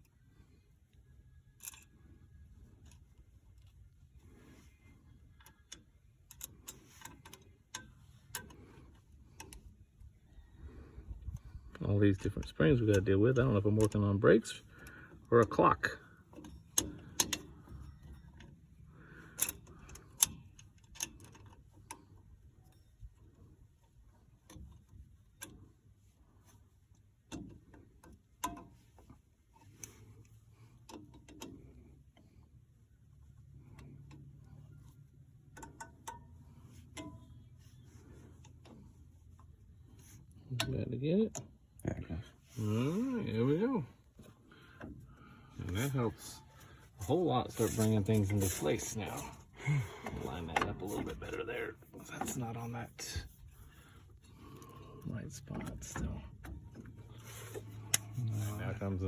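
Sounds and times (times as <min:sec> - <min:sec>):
faint metallic clicks and taps: 0:14.8 - 0:32.5, 0:33.1 - 0:41.9.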